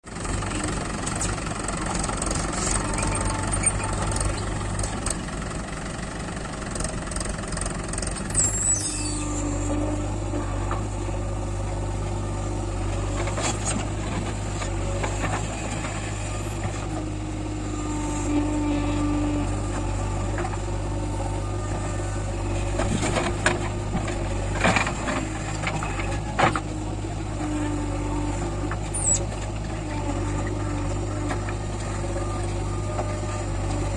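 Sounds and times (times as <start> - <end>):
diesel engines running: 0.0 - 33.9
high falling squeal: 8.2 - 9.6.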